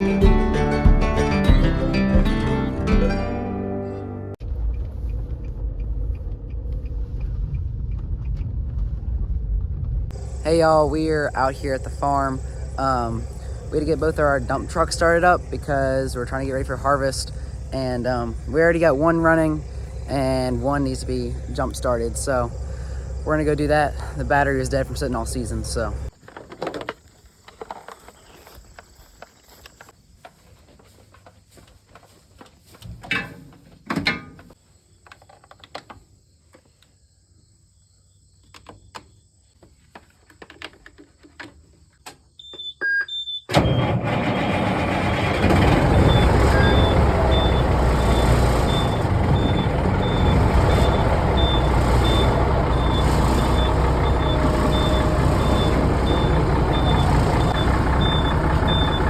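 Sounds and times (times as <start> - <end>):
truck engine starting and running: 0.0 - 26.2, 42.9 - 59.0.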